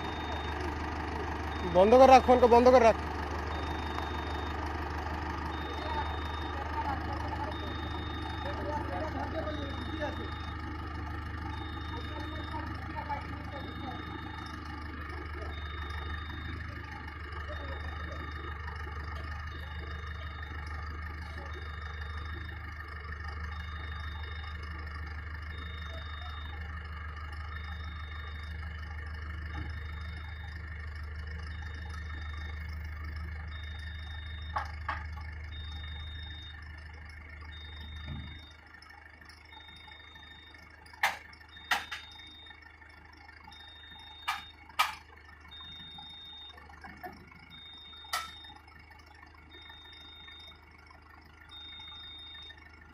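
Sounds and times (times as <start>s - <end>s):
faint high beep: 0.0s - 0.7s, 1.4s - 4.6s, 5.3s - 10.6s, 11.3s - 22.6s, 25.5s - 26.8s, 33.6s - 36.6s, 37.5s - 38.6s, 39.5s - 42.6s, 43.6s - 48.6s, 49.5s - 50.6s, 51.5s - 52.6s
engine idling: 0.0s - 52.9s.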